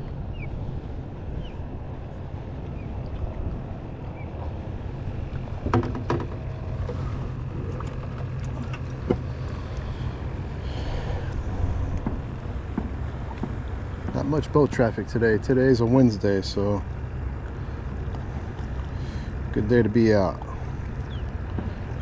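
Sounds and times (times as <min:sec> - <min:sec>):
water around a boat: 0:00.0 - 0:22.0
wind: 0:00.0 - 0:22.0
sharp clicks and knocks: 0:05.6 - 0:06.5.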